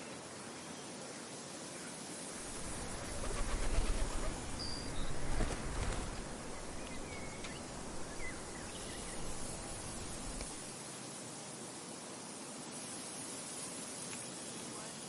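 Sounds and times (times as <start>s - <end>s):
high hiss of insects: 0.0s - 15.0s
wind blowing in gusts: 2.2s - 10.8s.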